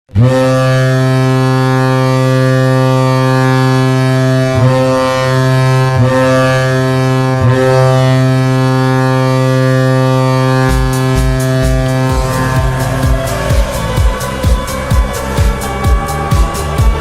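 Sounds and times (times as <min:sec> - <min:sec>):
arena goal horn blast: 0:00.1 - 0:17.0.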